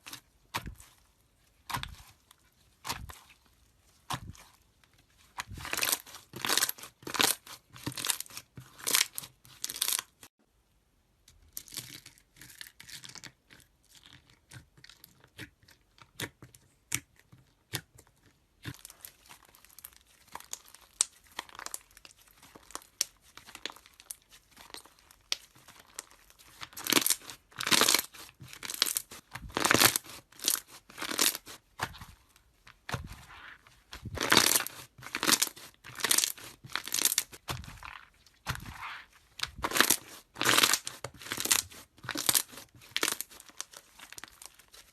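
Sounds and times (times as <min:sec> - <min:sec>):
slime crackling and popping: 0:18.6 - 0:32.0, 0:32.9 - 0:44.9.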